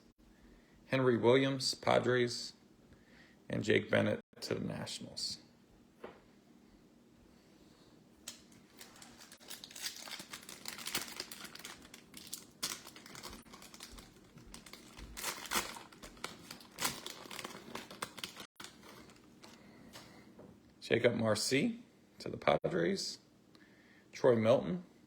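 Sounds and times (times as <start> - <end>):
foil wrapper tearing and crinkling: 8.3 - 19.6.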